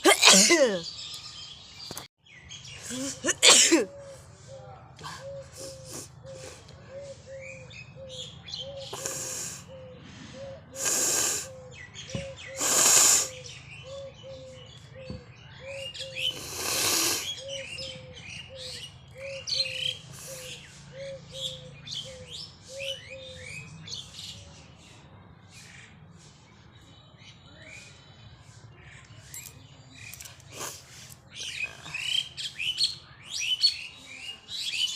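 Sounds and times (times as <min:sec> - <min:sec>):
person trying to sneeze: 0:00.0 - 0:00.9, 0:02.9 - 0:03.9
birds chirping: 0:00.0 - 0:34.9.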